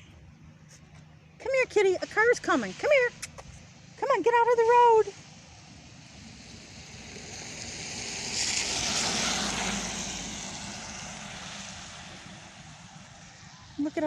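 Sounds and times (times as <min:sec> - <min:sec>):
car tyres hissing on wet road: 0:05.2 - 0:13.7.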